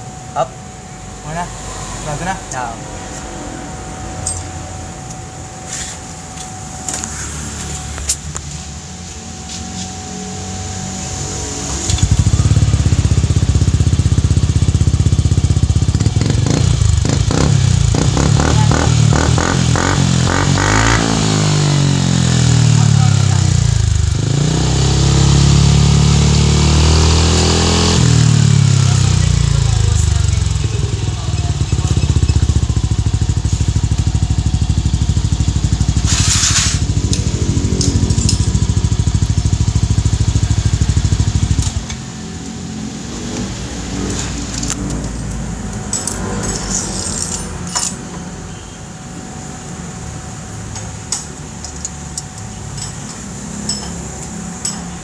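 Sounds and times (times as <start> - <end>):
scooter engine revving and idling: 10.1 - 47.1.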